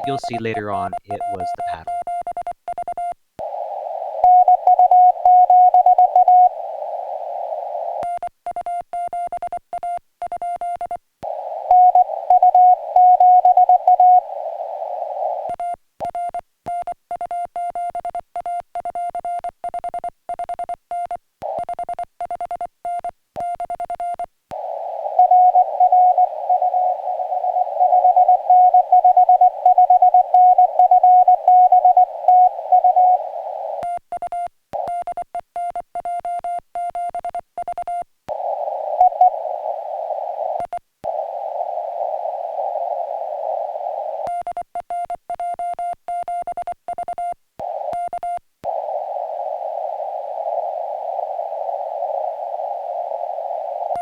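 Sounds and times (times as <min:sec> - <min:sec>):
radio band noise hiss: 0:00.0 - 0:01.9
morse code tone: 0:00.0 - 0:02.2.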